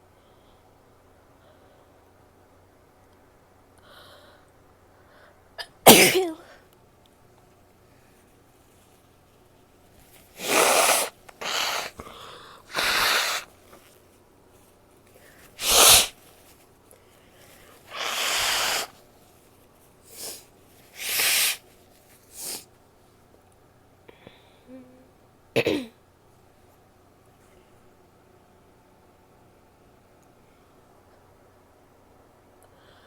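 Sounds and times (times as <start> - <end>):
woman sneezing: 5.6 - 6.6, 10.4 - 12.0, 12.7 - 13.5, 15.6 - 16.2, 17.9 - 18.9, 21.0 - 21.6
woman blowing her nose: 5.9 - 6.4, 10.3 - 13.6, 15.5 - 16.2, 17.9 - 19.0, 20.1 - 21.6, 22.3 - 22.6.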